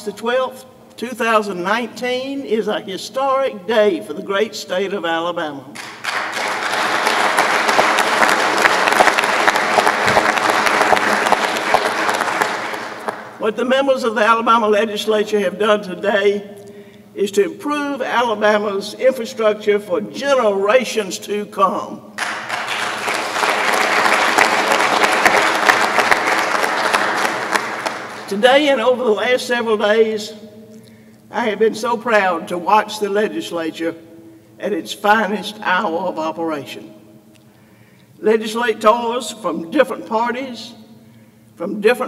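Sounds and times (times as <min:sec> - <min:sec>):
audience applauding: 0:05.8 - 0:13.4, 0:22.2 - 0:28.4.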